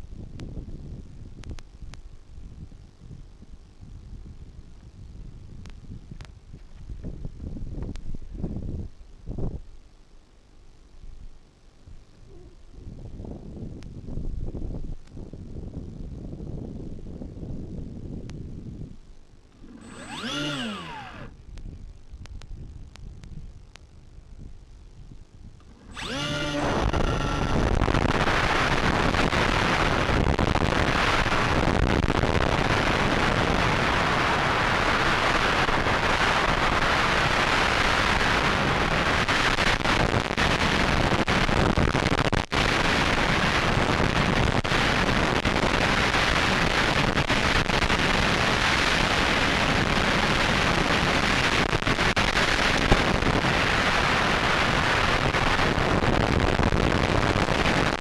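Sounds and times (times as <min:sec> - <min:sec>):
wind on microphone: 0:00.0 - 0:09.7, 0:11.9 - 0:19.0, 0:24.2 - 0:58.0
electric motors whining: 0:19.6 - 0:21.4, 0:25.6 - 0:31.6.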